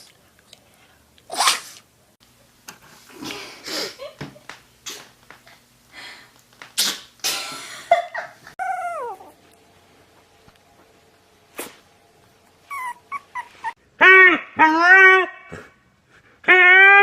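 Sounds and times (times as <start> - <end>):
puppies sneezing: 1.3 - 1.9, 6.8 - 7.5
puppy yips: 8.6 - 9.3, 12.7 - 13.8
puppy whining: 8.6 - 9.5, 12.5 - 13.8.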